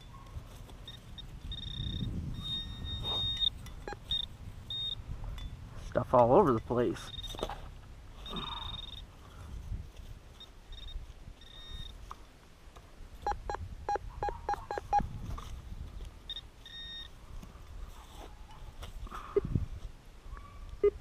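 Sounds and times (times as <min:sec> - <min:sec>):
metal detector high beeps: 0:00.8 - 0:05.0, 0:07.0 - 0:07.4, 0:08.2 - 0:09.1, 0:10.4 - 0:12.0, 0:16.3 - 0:17.1
metal detector low chirps: 0:00.8 - 0:05.6, 0:06.5 - 0:07.5, 0:08.2 - 0:09.1, 0:10.4 - 0:12.0, 0:16.3 - 0:17.2.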